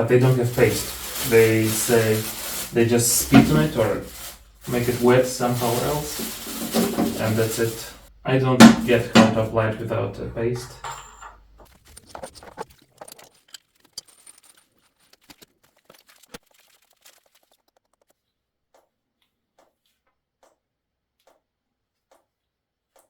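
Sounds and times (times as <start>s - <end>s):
small objects clicking and rattling: 11.6s - 18.2s.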